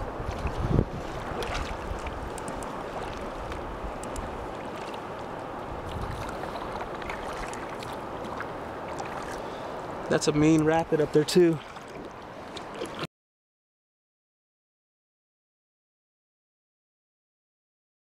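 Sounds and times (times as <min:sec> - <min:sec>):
river water rushing: 0:00.0 - 0:13.1.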